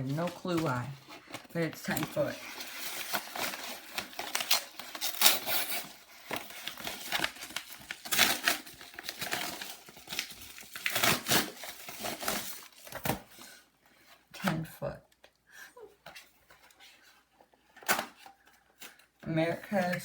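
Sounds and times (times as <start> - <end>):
packaging crinkling and rustling: 0.0 - 13.6.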